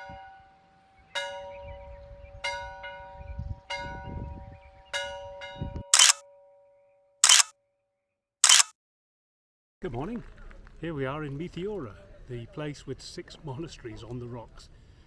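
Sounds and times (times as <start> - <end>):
camera shutter clicks: 6.0 - 6.2, 7.2 - 7.5, 8.4 - 8.7.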